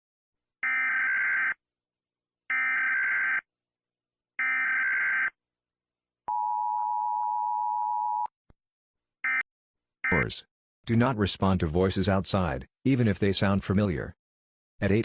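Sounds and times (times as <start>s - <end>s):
two-tone attention signal: 10.1s - 10.4s.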